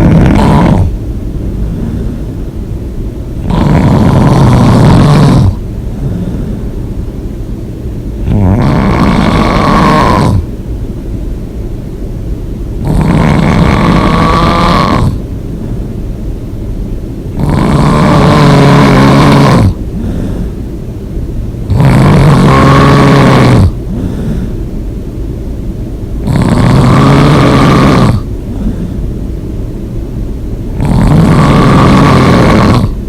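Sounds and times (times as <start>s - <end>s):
person snoring loudly: 0.0s - 1.0s, 3.4s - 6.6s, 8.2s - 10.5s, 12.8s - 15.2s, 17.3s - 20.5s, 21.7s - 24.6s, 26.2s - 29.0s, 30.7s - 33.0s
soft breathing: 0.8s - 2.8s, 5.4s - 7.2s, 15.1s - 16.3s, 19.7s - 20.8s, 23.7s - 24.8s, 28.2s - 29.5s.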